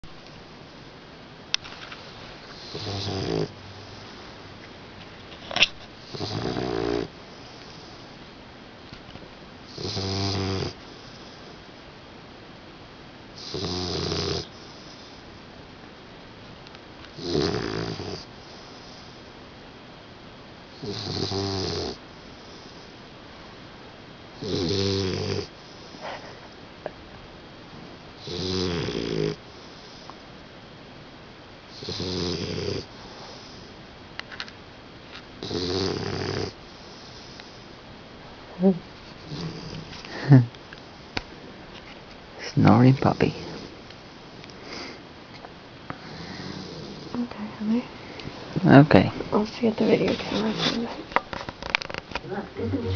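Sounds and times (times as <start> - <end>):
puppy snoring: 2.4 - 4.2, 6.0 - 8.2, 9.7 - 11.6, 13.4 - 15.3, 17.1 - 19.3, 20.7 - 23.0, 24.4 - 26.4, 28.2 - 30.2, 31.7 - 33.7, 35.4 - 37.7, 38.6 - 40.3, 42.4 - 43.8, 45.9 - 47.4, 49.3 - 52.9.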